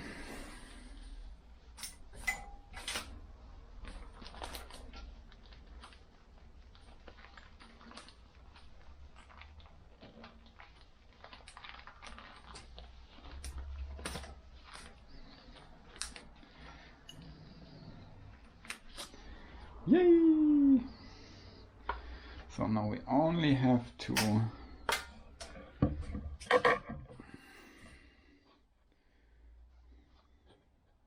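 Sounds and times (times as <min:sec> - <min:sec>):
faint clicks of small parts: 0:06.7 - 0:17.3.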